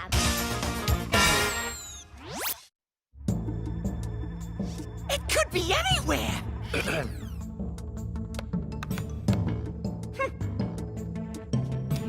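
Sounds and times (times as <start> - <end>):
background music low notes: 3.2 - 12.0.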